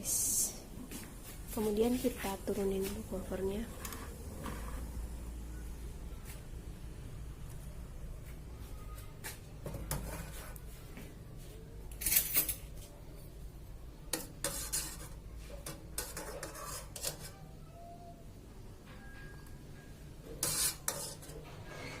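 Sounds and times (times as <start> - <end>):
metal pot and utensils clattering: 12.0 - 12.7, 14.1 - 17.3, 20.2 - 22.0.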